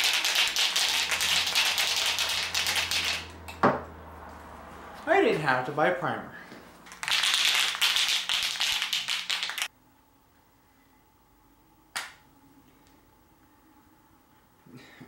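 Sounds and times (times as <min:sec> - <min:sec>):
aerosol can rattling while shaken: 0:00.0 - 0:03.3, 0:06.9 - 0:09.7.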